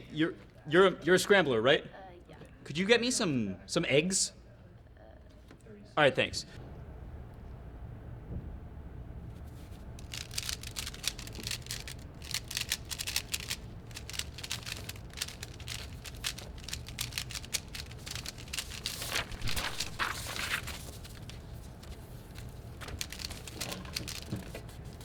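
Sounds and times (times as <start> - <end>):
puzzle cube clicking being turned: 10.0 - 25.0.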